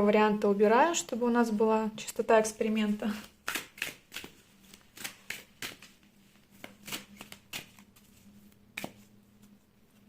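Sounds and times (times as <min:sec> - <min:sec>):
cards being shuffled: 0:03.1 - 0:10.0.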